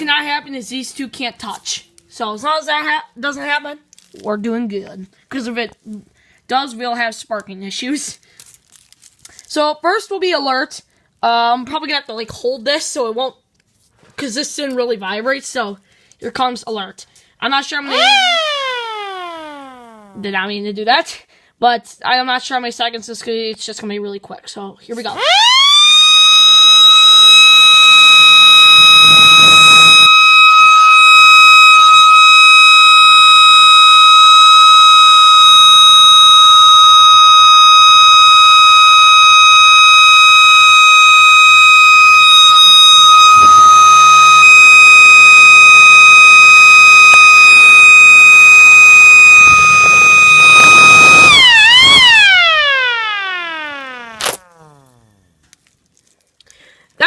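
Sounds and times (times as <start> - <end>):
electric siren steady tone: 17.8 - 20.2, 25.1 - 55.1.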